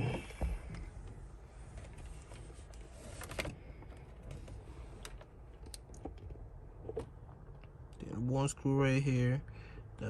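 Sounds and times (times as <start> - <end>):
low steady rumble: 0.0 - 10.0.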